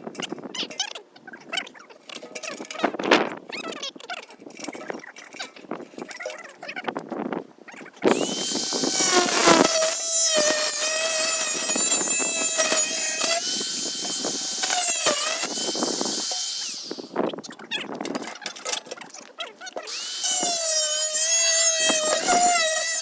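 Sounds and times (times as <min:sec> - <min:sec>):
power tool whining on steel: 0:08.1 - 0:17.2, 0:19.9 - 0:23.0.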